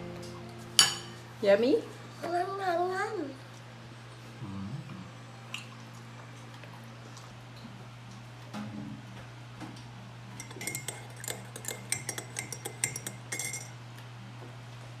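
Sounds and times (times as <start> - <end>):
steady low hum: 0.0 - 6.4
metal cutlery clinking on dish: 0.8 - 1.2, 10.4 - 13.7.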